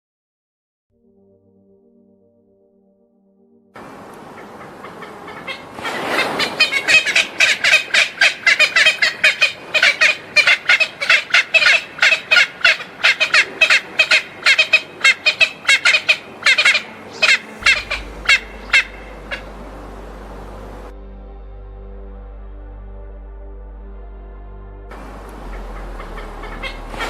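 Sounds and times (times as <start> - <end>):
short repeated bird calls: 5.0 - 20.9
low steady drone: 7.1 - 27.0.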